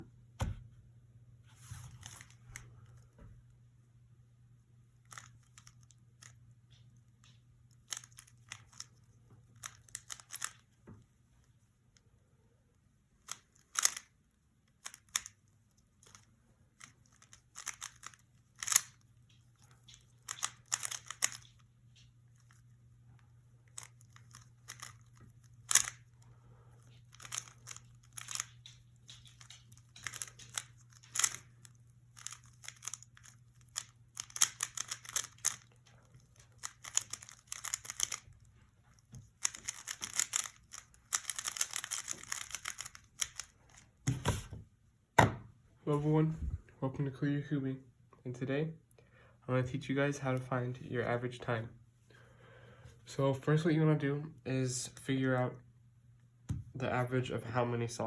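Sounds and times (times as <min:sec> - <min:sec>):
low electrical hum: 0:00.0 - 0:58.0
plastic object clicking and crinkling: 0:05.0 - 0:10.8, 0:14.7 - 0:44.4.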